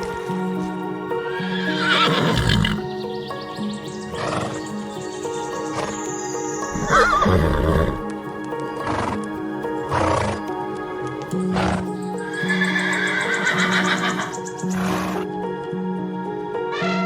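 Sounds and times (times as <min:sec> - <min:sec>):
background music with sustained notes: 0:00.0 - 0:17.0
horse whinnying: 0:01.6 - 0:02.8, 0:06.7 - 0:08.0, 0:12.6 - 0:15.2.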